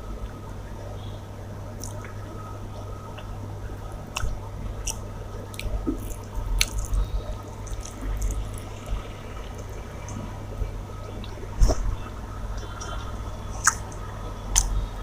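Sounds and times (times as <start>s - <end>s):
steady low hum: 0.0s - 15.0s
person chewing food: 1.8s - 10.2s, 12.8s - 15.0s.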